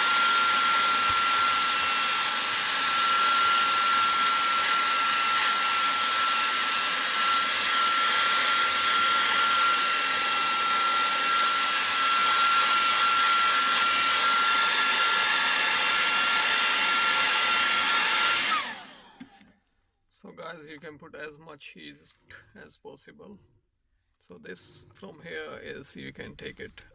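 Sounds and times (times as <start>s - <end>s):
heat gun fan whine: 0.0s - 19.4s.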